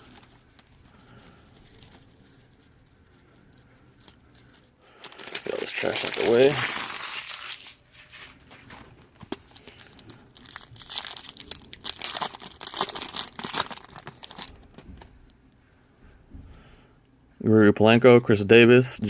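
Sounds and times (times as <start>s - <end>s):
wrappers crinkling: 0.0s - 15.3s
pack being torn open: 5.0s - 14.8s.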